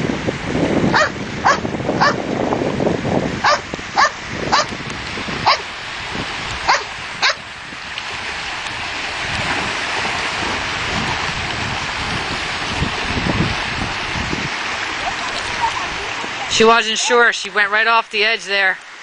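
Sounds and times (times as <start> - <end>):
surf breaking on beach: 0.0 - 18.7
dog barking: 0.9 - 2.2, 3.4 - 4.7, 5.4 - 5.7, 6.7 - 7.4.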